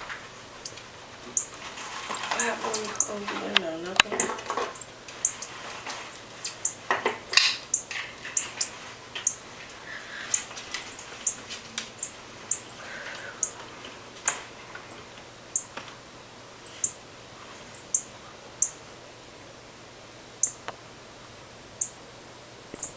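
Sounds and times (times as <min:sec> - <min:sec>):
soft low bird calls: 0:00.0 - 0:03.2, 0:04.0 - 0:15.8, 0:16.5 - 0:19.6
small bird chirping: 0:00.0 - 0:15.8, 0:16.6 - 0:17.0, 0:17.6 - 0:18.9, 0:20.4 - 0:20.7, 0:21.8 - 0:22.0.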